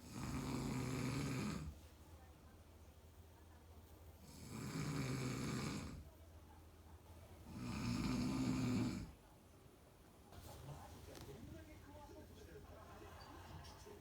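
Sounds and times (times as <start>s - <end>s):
man snoring: 0.0s - 1.7s, 7.5s - 9.1s.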